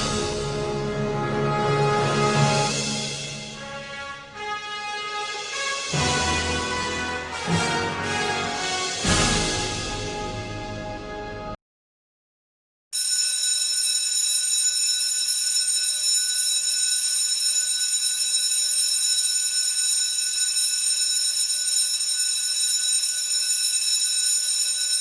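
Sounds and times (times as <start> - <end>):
electric school bell ringing: 13.0 - 25.0.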